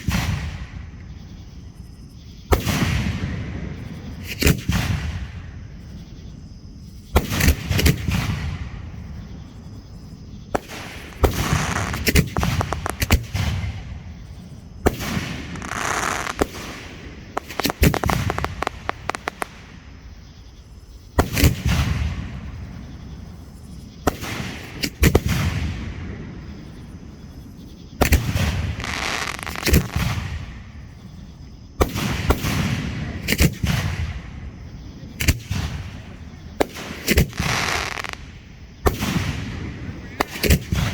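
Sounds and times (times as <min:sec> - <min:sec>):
fireworks bangs: 0:00.0 - 0:01.5, 0:02.5 - 0:06.4, 0:07.0 - 0:31.2, 0:31.8 - 0:40.9
fireworks crackling: 0:10.5 - 0:20.4, 0:28.0 - 0:30.5, 0:35.2 - 0:40.9.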